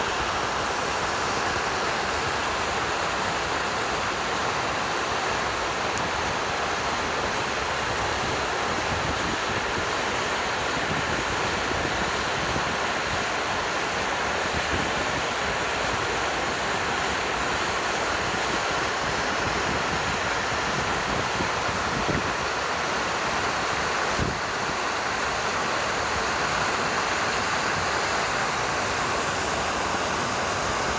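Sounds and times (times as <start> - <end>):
water rushing: 0.0 - 30.9.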